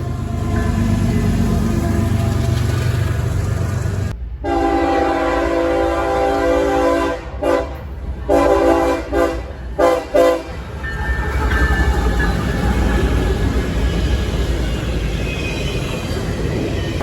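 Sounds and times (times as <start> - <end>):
train rolling on rails: 0.0 - 17.0
locomotive air horn: 4.4 - 10.8.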